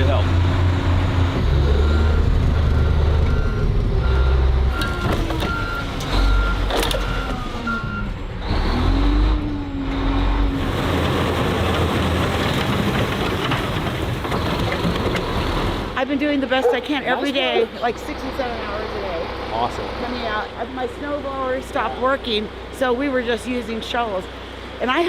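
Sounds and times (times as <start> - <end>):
diesel engine rumble: 0.0 - 25.0
truck backup alarm beeping: 1.6 - 8.3.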